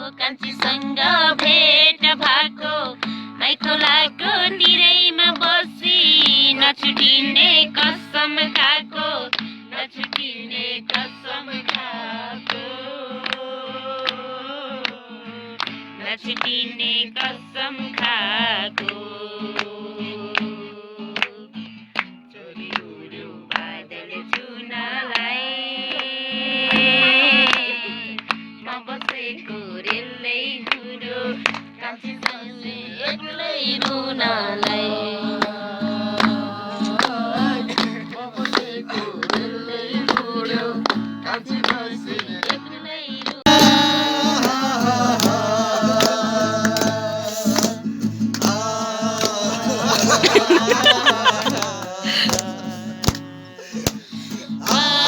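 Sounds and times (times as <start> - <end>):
folk song melody: 33.8 - 42.6, 43.5 - 55.0.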